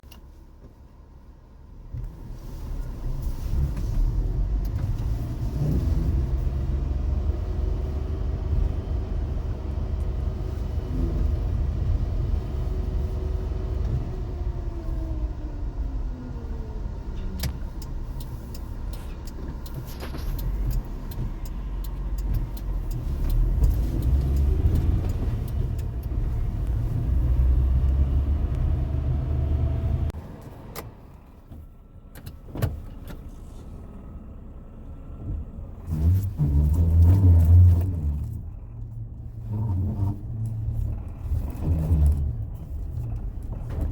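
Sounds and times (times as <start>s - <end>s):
car engine rumble: 0.0s - 43.9s
road noise: 0.0s - 43.9s.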